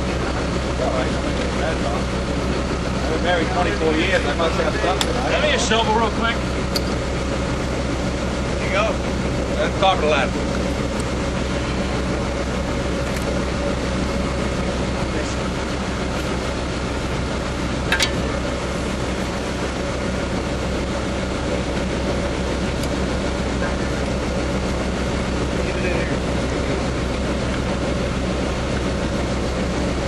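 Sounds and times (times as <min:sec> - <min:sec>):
engine droning: 0:00.0 - 0:30.0.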